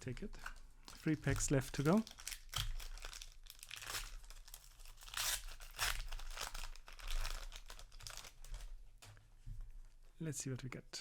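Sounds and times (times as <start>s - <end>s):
foil wrapper tearing and crinkling: 0.5s - 8.7s.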